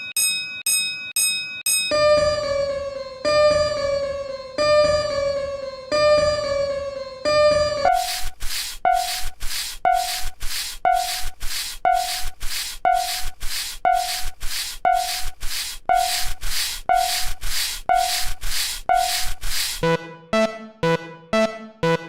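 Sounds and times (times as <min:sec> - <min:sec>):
short warning tone: 0:07.8 - 0:20.0
repeating hissing bursts: 0:07.9 - 0:19.8.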